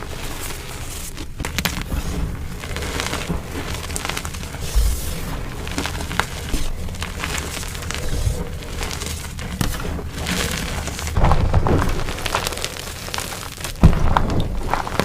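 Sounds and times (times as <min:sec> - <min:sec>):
chalk crunching and crackling: 0:00.0 - 0:15.0.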